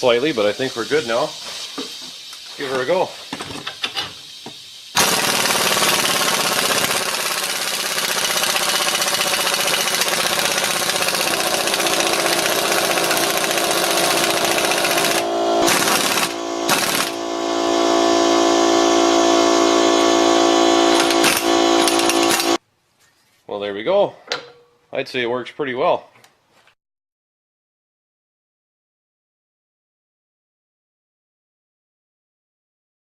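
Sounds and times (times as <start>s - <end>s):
impact wrench hammering: 5.0s - 18.6s, 20.0s - 22.6s.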